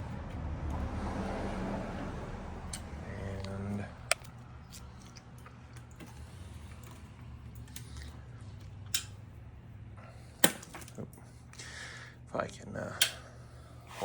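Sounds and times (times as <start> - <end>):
steady low hum: 0.0 - 14.0
wire clips clicking and tapping: 6.8 - 9.2, 10.4 - 11.1, 13.0 - 13.2.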